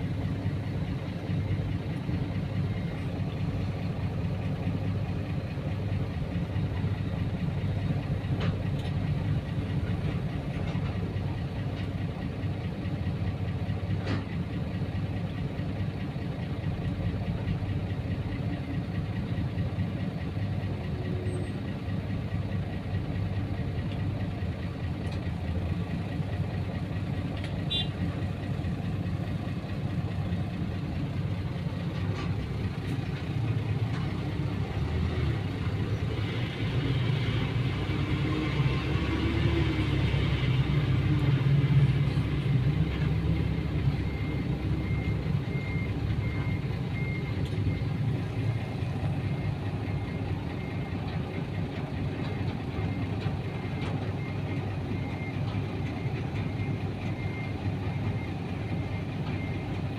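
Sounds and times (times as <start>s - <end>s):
heavy vehicle engine running: 0.0s - 59.9s.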